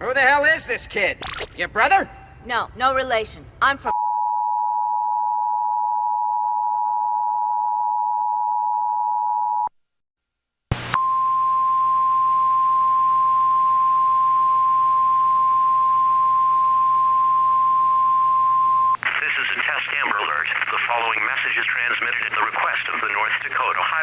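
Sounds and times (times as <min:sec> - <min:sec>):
broadcast hiss: 0:19.0 - 0:24.0.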